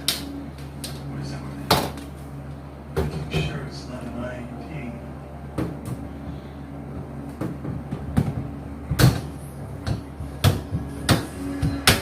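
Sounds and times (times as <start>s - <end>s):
sharp knocks and clicks of panels: 7.2s - 12.0s.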